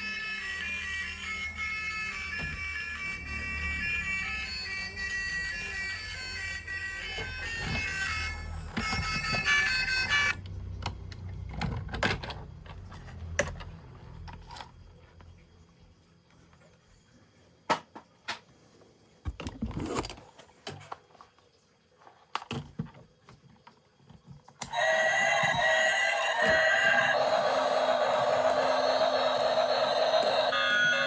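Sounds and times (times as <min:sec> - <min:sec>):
loud pitched sound: 0:24.7 - 0:31.0.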